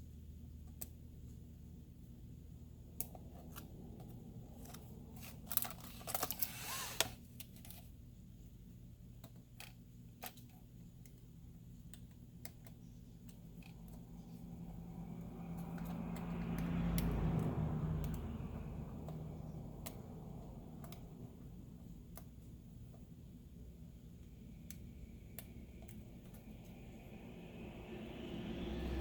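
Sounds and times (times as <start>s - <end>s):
plastic parts clicking: 3.0s - 7.9s
scratching and rustling: 4.5s - 7.9s
low hum: 11.4s - 29.0s.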